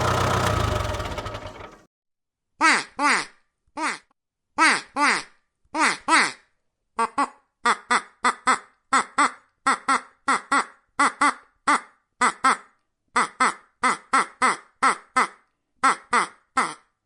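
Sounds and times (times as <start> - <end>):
duck quacking: 7.0 - 16.9.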